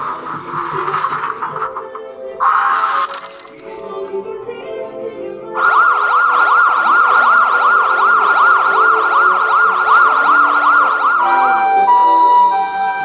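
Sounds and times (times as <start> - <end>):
faint background music: 0.0 - 13.0
electronic siren yelping: 5.6 - 13.0
steady two-tone alert: 5.6 - 13.0.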